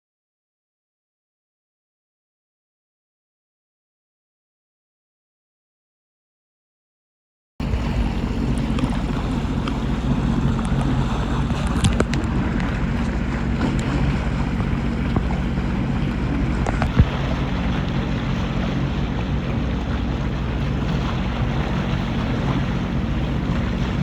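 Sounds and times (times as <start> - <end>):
jet ski engine running: 7.6 - 24.0
water rushing past hull: 7.6 - 24.0
wind buffeting microphone: 7.6 - 24.0.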